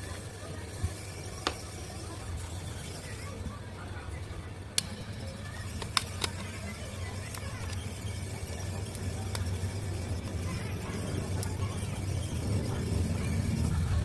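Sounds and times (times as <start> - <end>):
sharp clicks: 4.7 - 10.5.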